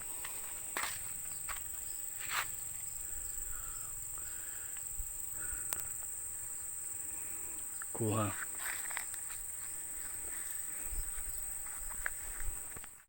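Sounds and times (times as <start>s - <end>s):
footsteps scuffing: 0.0s - 2.6s, 8.2s - 13.0s
insects droning: 0.0s - 13.0s.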